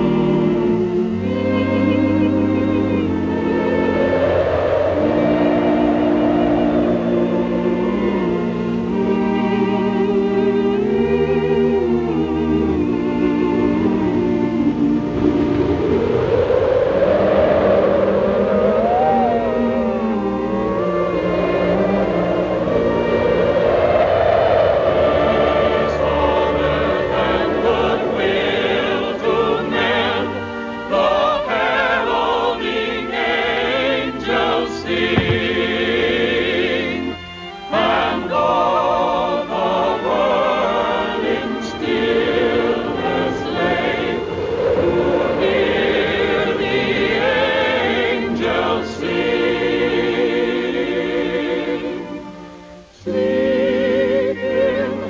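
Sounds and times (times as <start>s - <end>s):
orchestra playing: 0.0s - 11.3s, 26.0s - 49.6s
choir singing operatically: 0.0s - 55.0s.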